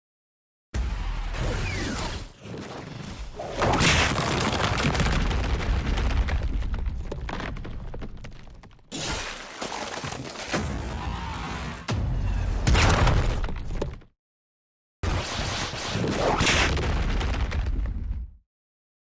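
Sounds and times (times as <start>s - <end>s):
loud crash: 10.5s - 13.8s
booming impacts: 10.6s - 13.8s.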